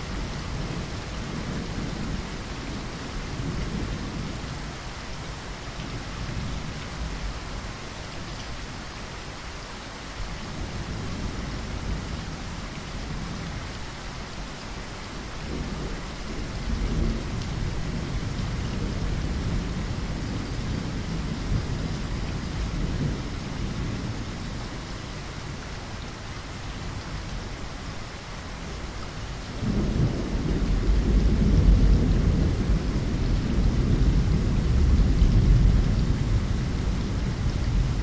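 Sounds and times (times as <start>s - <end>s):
heavy rain falling: 0.0s - 38.0s
thunder rumbling: 29.5s - 38.0s.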